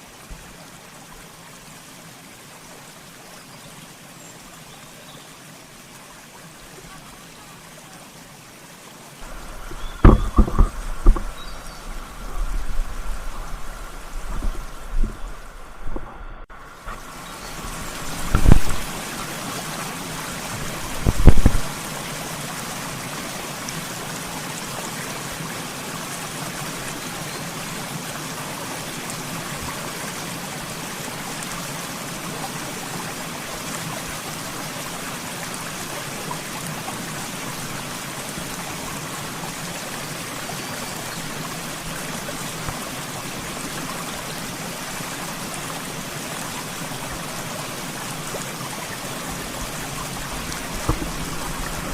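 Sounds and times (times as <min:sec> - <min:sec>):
water rushing over rocks: 0:00.0 - 0:51.9
loud low thump: 0:09.4 - 0:11.6.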